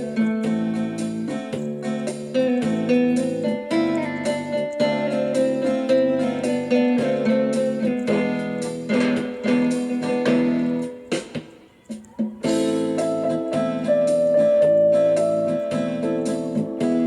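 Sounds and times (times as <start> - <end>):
plucked guitar music: 0.0 - 17.0.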